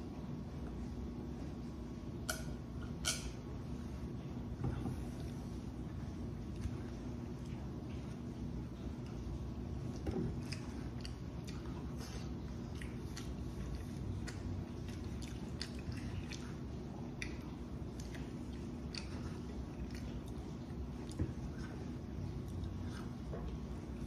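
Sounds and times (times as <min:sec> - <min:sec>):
steady low hum: 0:00.0 - 0:24.0
person chewing food: 0:04.9 - 0:24.0.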